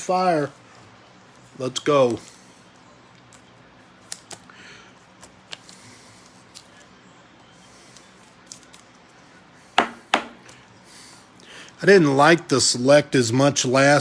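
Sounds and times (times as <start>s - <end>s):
cards rustling and clicking: 3.2s - 4.6s, 5.2s - 6.9s
sharp taps: 9.8s - 10.4s.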